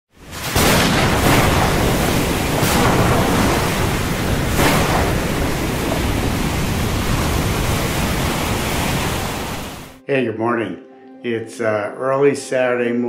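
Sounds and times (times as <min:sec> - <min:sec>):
storm rushing: 0:00.2 - 0:10.0.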